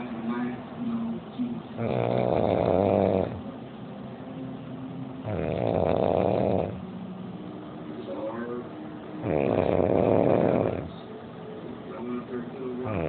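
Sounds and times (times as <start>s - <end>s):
woman snoring loudly: 1.8s - 3.4s, 5.2s - 6.8s, 9.2s - 10.9s.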